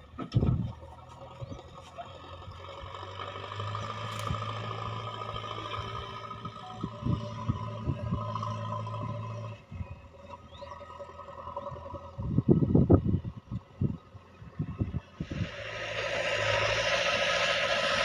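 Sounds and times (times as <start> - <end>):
diesel engine running: 0.0 - 18.0.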